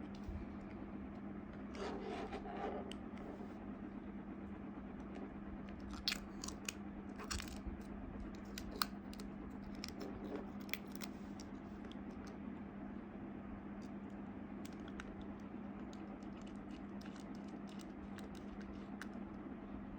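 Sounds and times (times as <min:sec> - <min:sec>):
steady low hum: 0:00.0 - 0:19.9.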